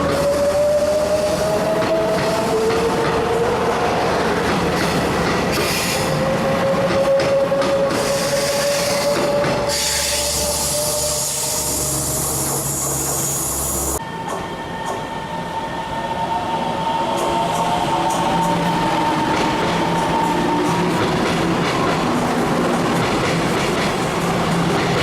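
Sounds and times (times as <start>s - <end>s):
train wheels squealing on rails: 0.0s - 3.4s, 4.7s - 21.2s
train rumble and clatter: 0.0s - 25.0s
loud hiss: 9.7s - 14.0s.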